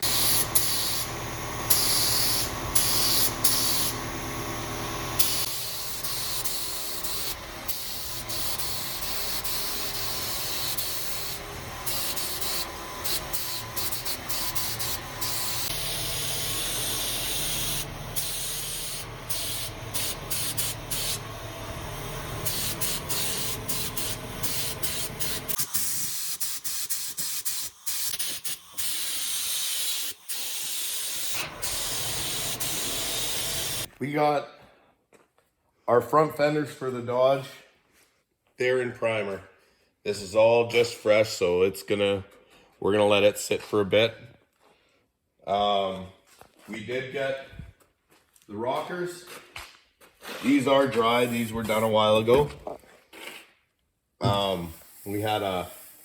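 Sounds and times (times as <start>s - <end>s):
air spray gun hissing: 0.0s - 33.9s, 50.6s - 52.1s, 54.4s - 56.0s.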